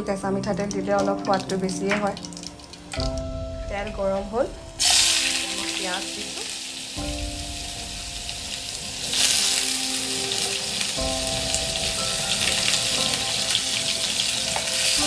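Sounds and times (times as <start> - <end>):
onions sizzling in oil: 4.2 - 15.0.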